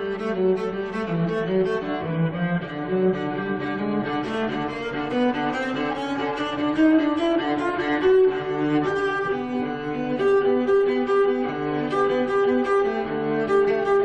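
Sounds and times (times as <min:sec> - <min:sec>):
bowed string instruments playing: 0:00.0 - 0:14.0.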